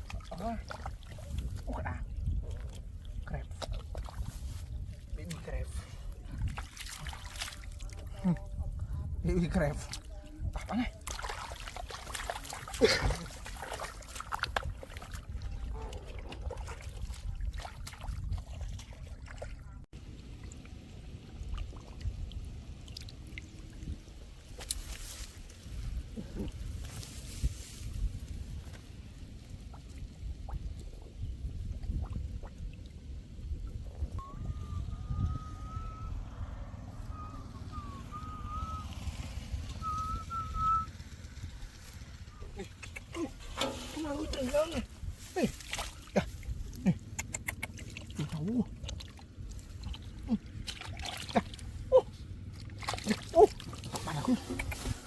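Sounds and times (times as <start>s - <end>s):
splashing in shallow muddy water: 0.0s - 55.0s
low steady rumble: 25.4s - 55.0s
person whistling a tune: 34.2s - 36.2s, 37.1s - 39.0s, 39.8s - 41.0s.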